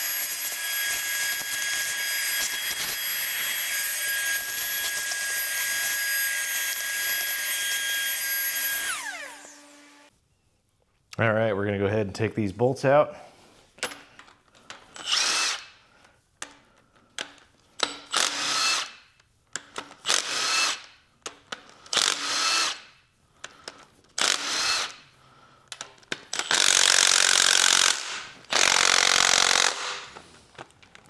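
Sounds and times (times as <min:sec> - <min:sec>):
power tool spinning: 0:00.0 - 0:10.1, 0:14.9 - 0:15.8, 0:17.8 - 0:19.0, 0:21.7 - 0:22.9, 0:24.2 - 0:25.1, 0:26.2 - 0:30.3.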